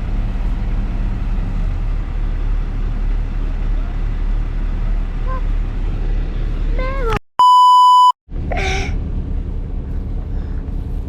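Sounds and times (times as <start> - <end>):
bulldozer engine rumble: 0.0 - 7.2, 8.0 - 11.0
censor bleep: 7.4 - 8.2.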